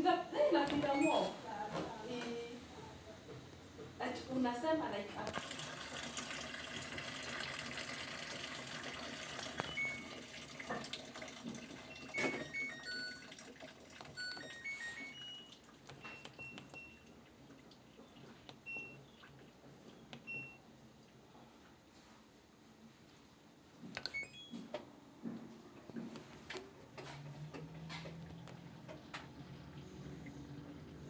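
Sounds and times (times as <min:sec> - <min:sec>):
short high beeps: 0:00.9 - 0:01.4
water running: 0:05.2 - 0:15.9.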